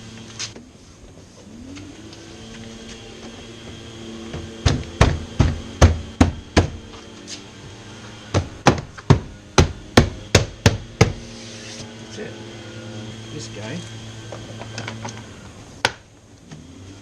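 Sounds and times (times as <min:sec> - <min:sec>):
sharp knocks on car door panel: 0:04.4 - 0:06.8, 0:08.3 - 0:11.2.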